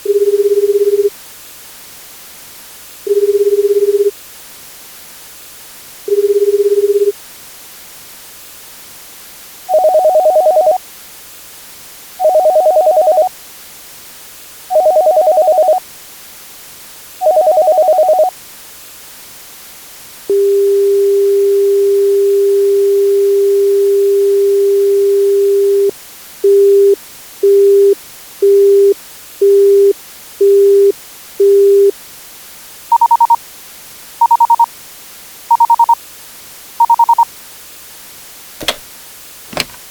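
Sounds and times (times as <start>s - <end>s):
telephone busy signal beeps: 0.1s - 1.1s, 3.1s - 4.1s, 6.1s - 7.1s, 9.7s - 10.8s, 12.2s - 13.3s, 14.7s - 15.8s, 17.2s - 18.3s, 20.3s - 31.9s, 32.9s - 33.4s, 34.2s - 34.7s, 35.5s - 36.0s, 36.8s - 37.3s
telephone ringing tone: 0.1s - 1.1s, 3.1s - 4.1s, 6.1s - 7.1s, 9.7s - 10.8s, 12.2s - 13.3s, 14.7s - 15.8s, 17.2s - 18.3s, 32.9s - 33.4s, 34.2s - 34.7s, 35.5s - 36.0s, 36.8s - 37.2s
telephone dial tone: 9.7s - 10.8s, 12.2s - 13.3s, 14.7s - 15.8s, 17.2s - 18.3s.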